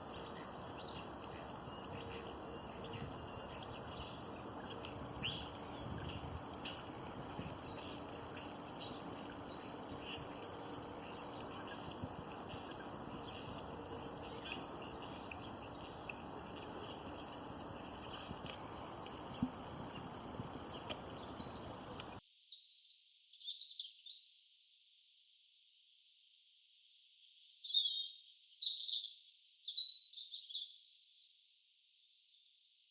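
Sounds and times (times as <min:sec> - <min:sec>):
steady background hiss: 0:00.0 - 0:22.2
small birds chirping: 0:00.0 - 0:22.9.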